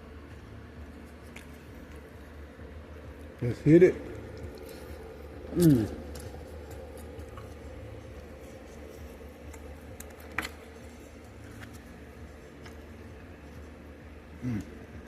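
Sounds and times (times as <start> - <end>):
steady low hum: 0.0 - 15.0
person chewing wetly: 4.3 - 11.9.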